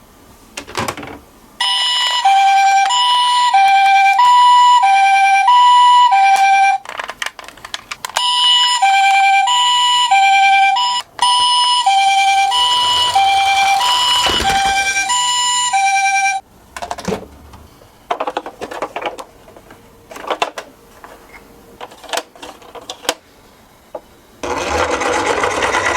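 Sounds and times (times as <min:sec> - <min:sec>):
toy two-tone siren: 0:01.6 - 0:06.8, 0:08.2 - 0:16.4.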